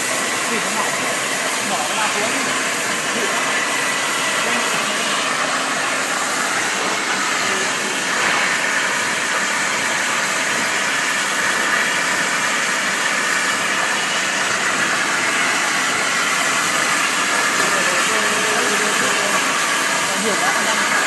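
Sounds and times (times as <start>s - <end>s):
plasma torch hissing: 0.0s - 21.0s.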